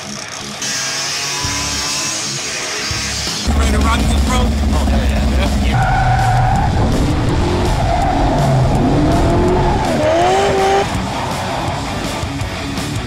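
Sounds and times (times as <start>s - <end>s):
car engine: 3.4s - 13.0s
car tires squealing: 5.6s - 12.6s.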